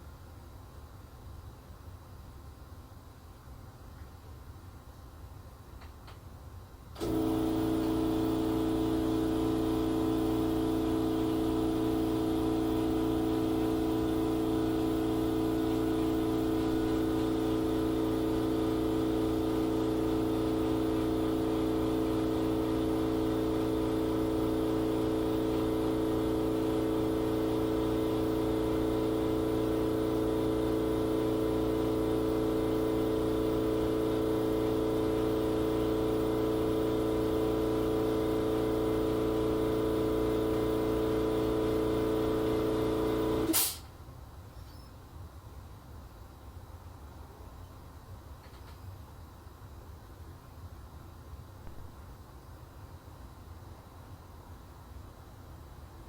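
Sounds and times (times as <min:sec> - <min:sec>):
fridge compressor and fan humming: 0:05.5 - 0:45.3.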